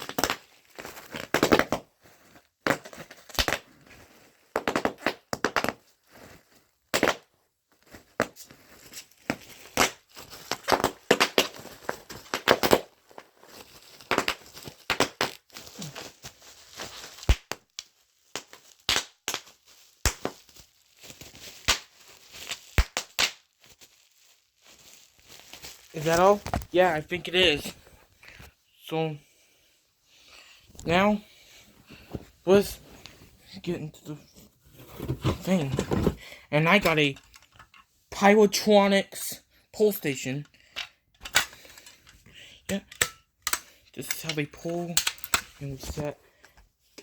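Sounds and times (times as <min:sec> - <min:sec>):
bubble wrap popping: 0:00.0 - 0:28.4
plastic crinkling: 0:07.6 - 0:28.6.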